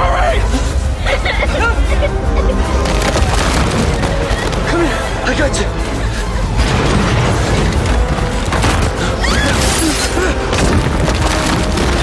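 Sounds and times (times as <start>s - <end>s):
film music score: 0.0s - 12.0s
crashing cracking debris: 2.7s - 12.0s.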